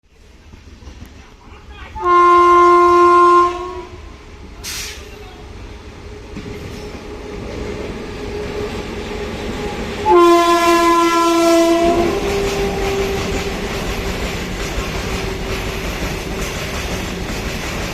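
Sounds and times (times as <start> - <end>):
approaching train rumble: 0.0 - 17.9
locomotive horn blasts: 2.0 - 4.1, 10.0 - 13.6.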